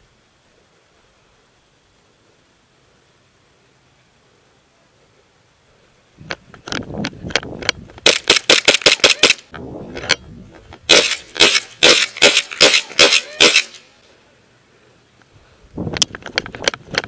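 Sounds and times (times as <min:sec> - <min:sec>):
airsoft guns firing: 0:08.0 - 0:09.5, 0:10.9 - 0:13.8.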